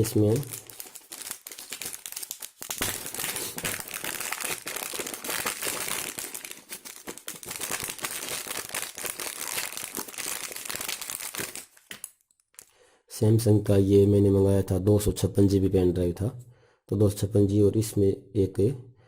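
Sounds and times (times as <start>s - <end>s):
packaging crinkling and tearing: 0.0s - 12.7s.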